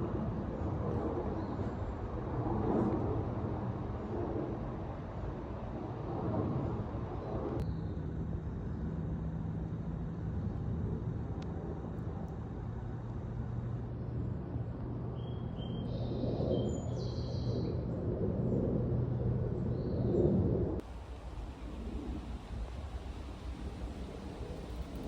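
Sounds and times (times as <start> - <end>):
faint engine hum: 0.0 - 25.0
low rumble: 18.1 - 25.0.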